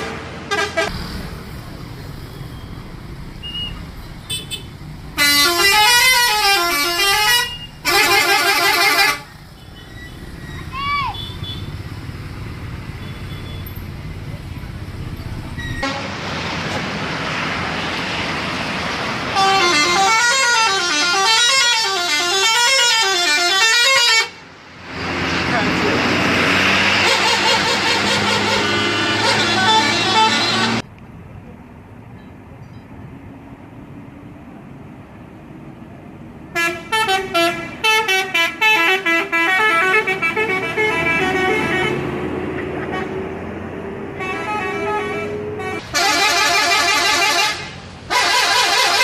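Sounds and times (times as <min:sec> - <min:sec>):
air horns playing a tune: 0:05.2 - 0:09.3, 0:27.0 - 0:30.8, 0:44.2 - 0:49.0.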